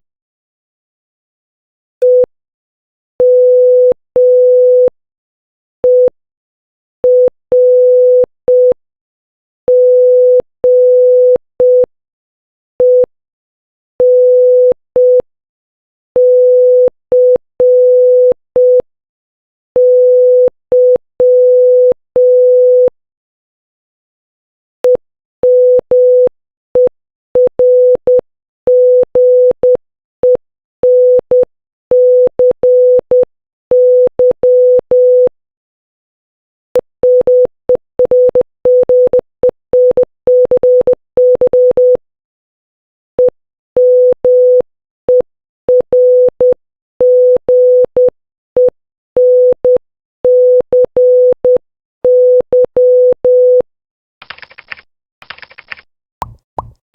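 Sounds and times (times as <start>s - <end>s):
morse code beeps: 37.0s - 39.2s, 39.8s - 42.0s, 43.2s - 53.6s.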